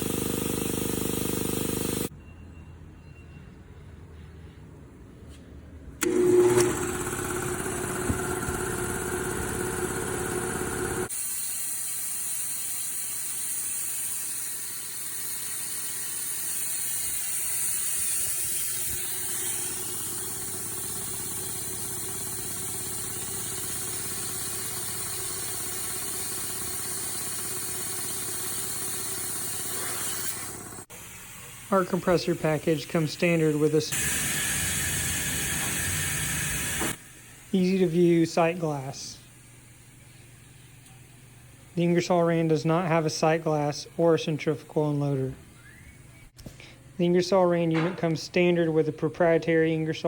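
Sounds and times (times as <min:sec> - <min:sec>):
electric air compressor running: 0:00.0 - 0:02.1, 0:06.0 - 0:43.9.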